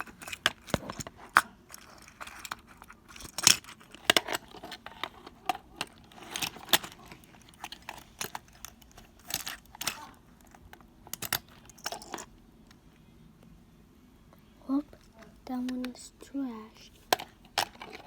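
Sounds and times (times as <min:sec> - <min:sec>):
plastic toy parts clicking: 0:00.0 - 0:12.3.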